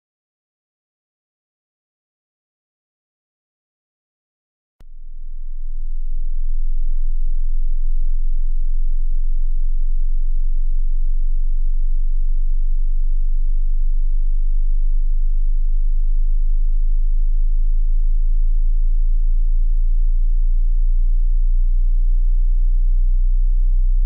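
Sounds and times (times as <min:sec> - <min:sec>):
sine-wave test tone sweep: 0:04.8 - 0:24.0.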